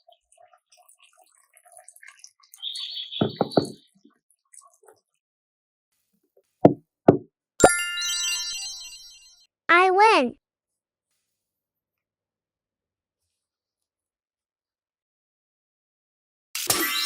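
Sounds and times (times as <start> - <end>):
hard knocks: 3.2 - 3.8, 6.7 - 7.2.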